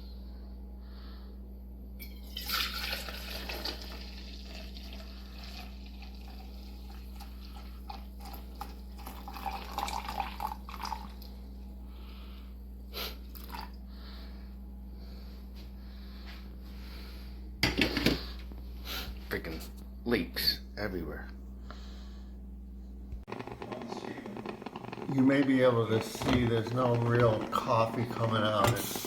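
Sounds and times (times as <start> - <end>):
steady low hum: 0.0 - 2.1, 6.6 - 29.0
coffee maker dripping and sputtering: 2.1 - 11.5, 23.3 - 29.0.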